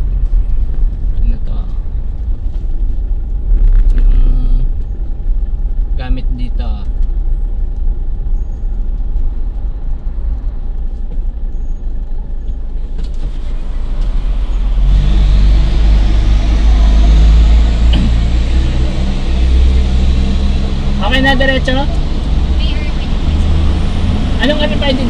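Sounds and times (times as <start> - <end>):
car engine rumble: 0.0 - 25.0
road noise hiss: 12.6 - 25.0.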